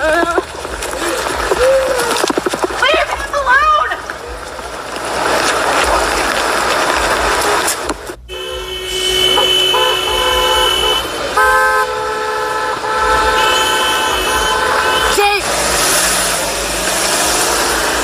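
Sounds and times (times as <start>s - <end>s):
car horns honking: 7.3s - 18.0s.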